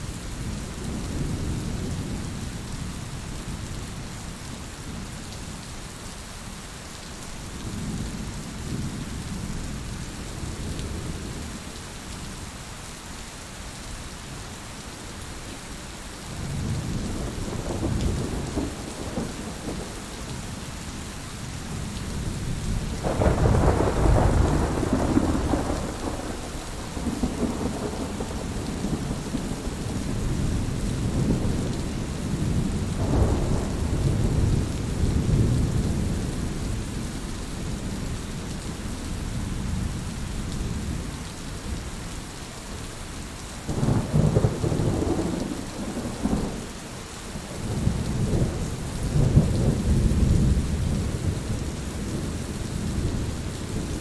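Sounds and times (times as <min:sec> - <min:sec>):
steady rain falling: 0:00.0 - 0:54.0
thunder rumbling: 0:16.5 - 0:20.6, 0:21.7 - 0:37.0, 0:43.7 - 0:46.6.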